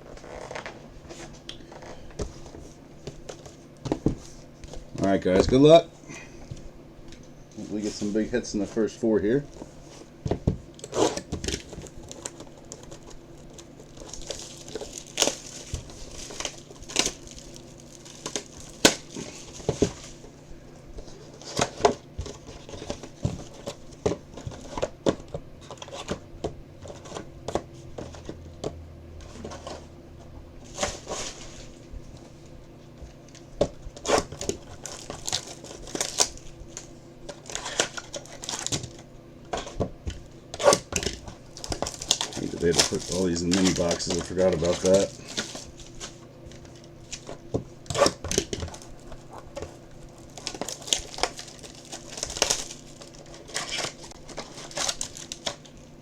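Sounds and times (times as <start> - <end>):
plastic wrapping crinkling: 10.7 - 20.4, 33.2 - 56.0
cardboard tearing: 10.8 - 20.2, 34.0 - 39.0, 40.5 - 46.2, 47.0 - 49.4, 50.0 - 55.8.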